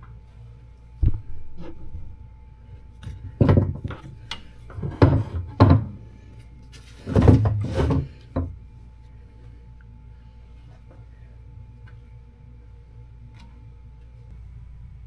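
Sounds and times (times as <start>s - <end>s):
tools knocking and clunking: 3.2s - 6.0s, 7.0s - 8.6s
scraping: 6.7s - 8.5s.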